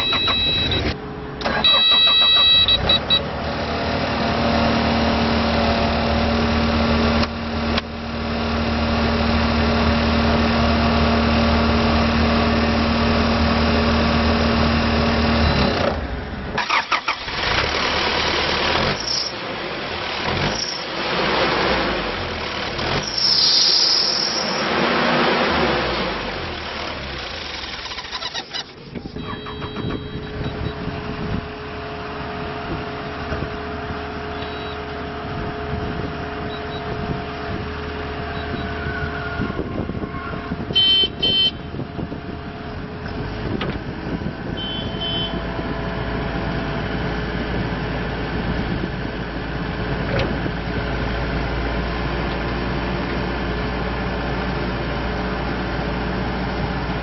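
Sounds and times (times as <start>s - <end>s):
short electronic beeping: 0.0s - 3.3s, 29.1s - 30.9s, 34.4s - 34.8s
diesel engine running: 0.0s - 57.0s.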